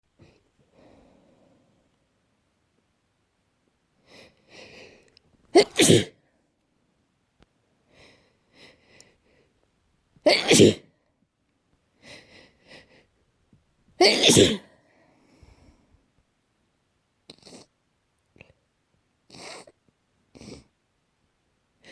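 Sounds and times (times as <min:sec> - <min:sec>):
person sneezing: 0:05.6 - 0:06.2, 0:10.3 - 0:10.8, 0:14.0 - 0:14.7.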